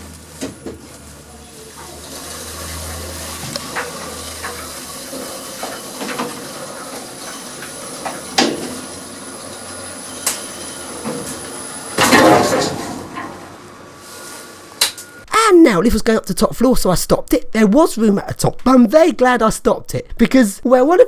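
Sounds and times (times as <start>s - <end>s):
lift rushing hiss: 13.0s - 15.2s.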